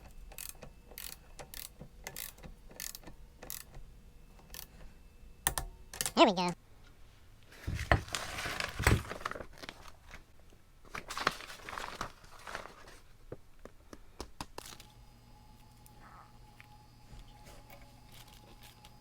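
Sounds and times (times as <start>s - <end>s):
rustling and crinkling: 6.8s - 14.0s.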